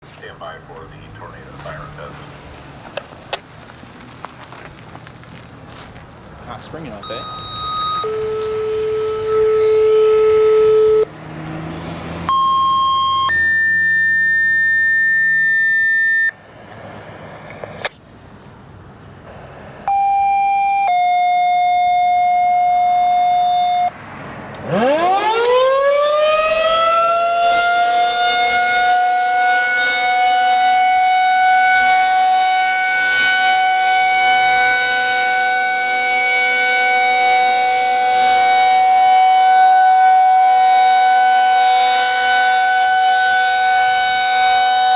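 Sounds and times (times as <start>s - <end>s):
tornado siren wailing: 6.8s - 16.4s, 19.9s - 24.0s, 24.6s - 44.9s
electronic tones at changing pitches: 6.9s - 11.1s, 12.3s - 16.4s, 19.9s - 24.0s.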